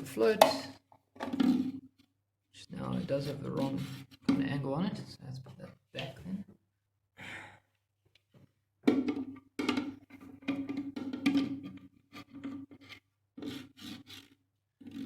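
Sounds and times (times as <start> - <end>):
plastic parts scraping and knocking: 0.3 - 2.1, 2.9 - 4.7, 8.8 - 15.0.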